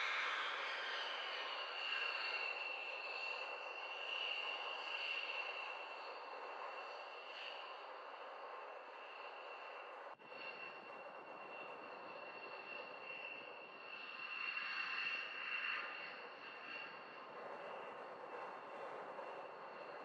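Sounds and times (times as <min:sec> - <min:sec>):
distant jet engine whine: 0:00.0 - 0:20.0.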